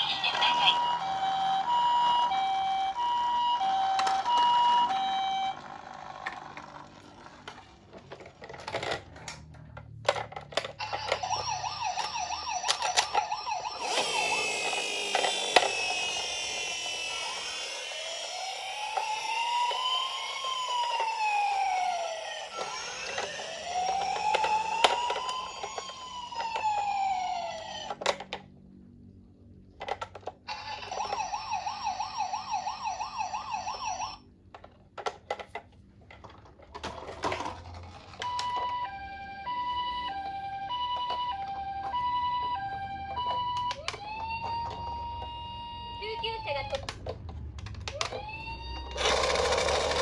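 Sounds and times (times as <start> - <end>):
toy siren wailing and yelping: 0.0 - 5.9, 10.6 - 28.1, 30.4 - 34.3, 38.2 - 47.0, 47.9 - 50.0.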